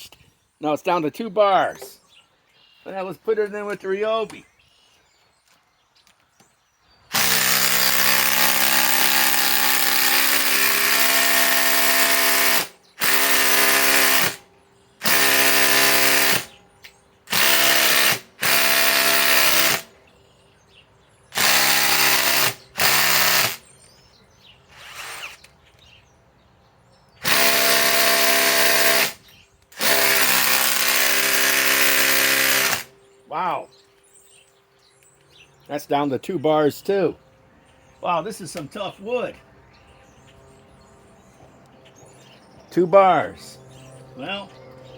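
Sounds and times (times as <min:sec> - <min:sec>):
impact driver driving screw into wood: 0:07.1 - 0:14.4, 0:15.0 - 0:16.6, 0:17.3 - 0:19.9, 0:21.4 - 0:23.7, 0:24.7 - 0:25.5, 0:27.2 - 0:32.9.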